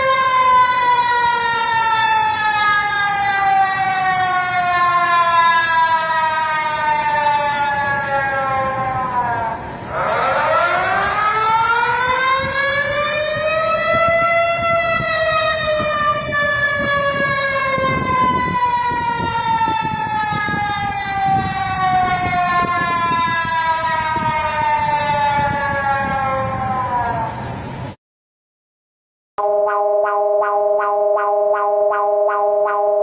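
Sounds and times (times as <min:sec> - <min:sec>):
emergency siren wailing: 0:00.0 - 0:27.9, 0:29.4 - 0:33.0.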